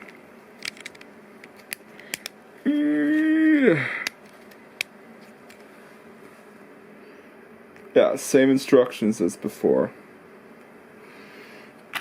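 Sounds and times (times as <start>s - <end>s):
plastic pieces clicking: 0.6s - 2.4s
man humming a note: 2.6s - 4.1s.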